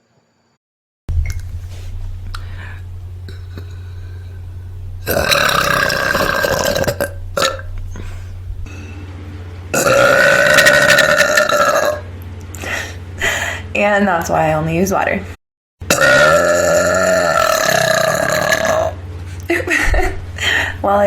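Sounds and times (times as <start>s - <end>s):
woman burping: 5.0s - 8.8s, 15.9s - 19.0s.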